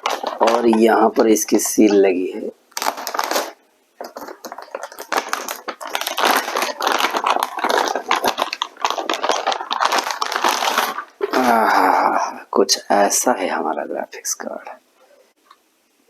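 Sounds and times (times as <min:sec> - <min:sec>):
plastic packaging crinkling: 0:00.0 - 0:12.3.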